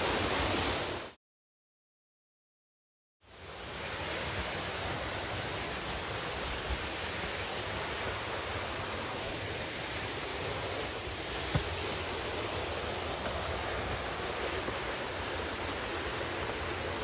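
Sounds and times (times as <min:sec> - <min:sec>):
waterfall rushing: 0:03.4 - 0:17.0.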